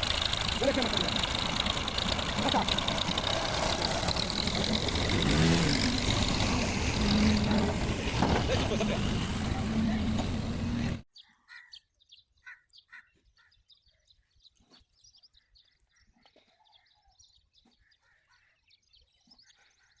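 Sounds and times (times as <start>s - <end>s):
loud motor noise: 0.0s - 11.0s.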